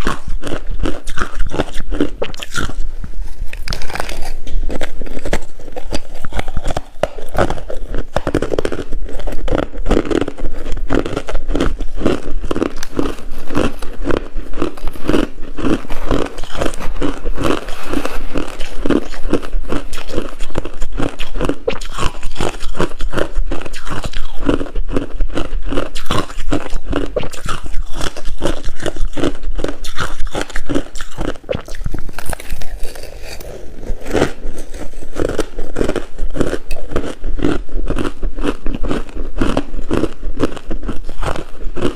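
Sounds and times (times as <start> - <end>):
crushed ice being chewed: 0.0 - 41.9.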